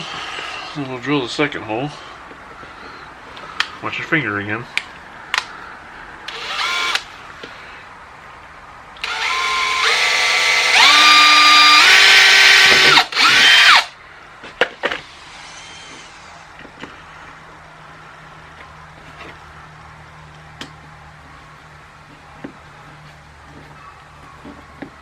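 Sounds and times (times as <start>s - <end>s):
power drill whine: 6.3s - 7.0s, 9.0s - 13.9s, 15.0s - 16.5s.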